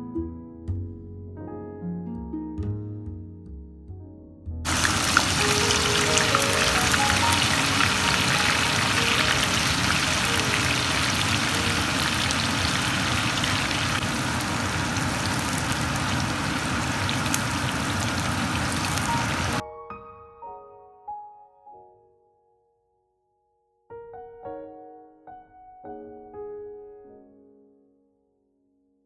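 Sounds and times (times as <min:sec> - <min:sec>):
soft piano music: 0:00.0 - 0:28.1
food sizzling in hot oil: 0:04.7 - 0:19.6.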